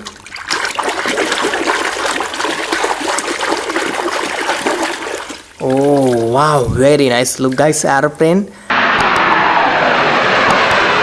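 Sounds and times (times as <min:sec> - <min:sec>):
water running and splashing: 0:00.0 - 0:08.5.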